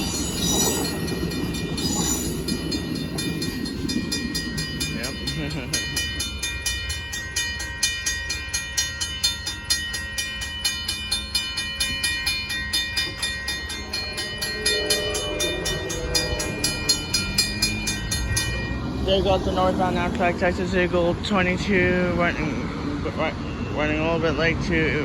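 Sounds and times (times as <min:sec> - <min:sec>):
high-pitched ringing tone: 0:00.0 - 0:18.8
train wheels clattering: 0:00.0 - 0:20.7.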